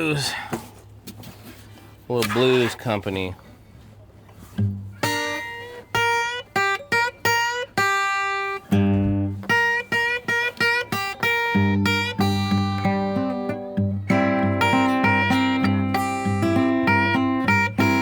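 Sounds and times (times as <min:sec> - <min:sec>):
slow blues banjo: 0:04.4 - 0:18.0.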